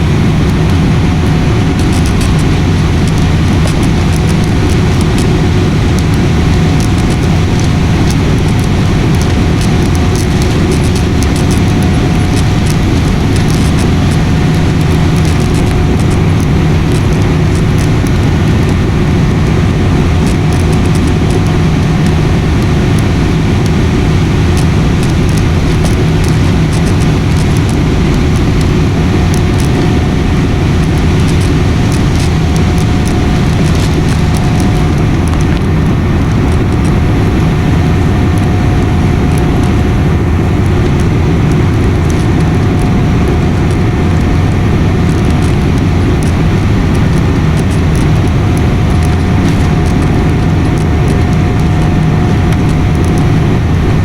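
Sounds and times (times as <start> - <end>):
airliner cabin engine drone: 0.0 - 54.0.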